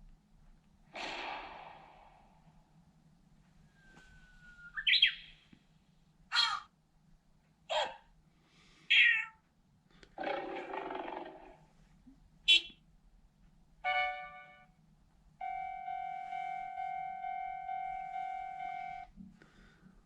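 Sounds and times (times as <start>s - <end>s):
steady buzzer-like tone: 15.4s - 19.1s.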